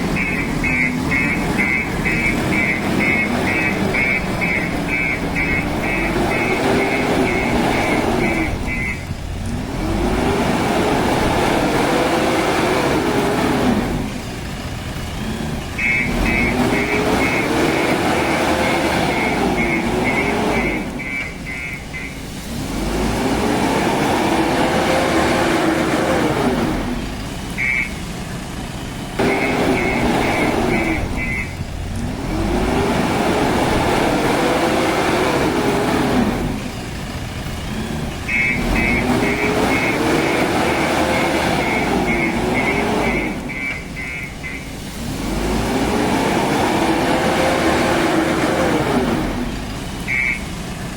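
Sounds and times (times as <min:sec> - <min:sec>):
diesel engine revving: 0:00.0 - 0:50.9
rapid high beeping: 0:00.1 - 0:09.2, 0:15.8 - 0:22.2, 0:29.2 - 0:31.7, 0:38.2 - 0:44.8.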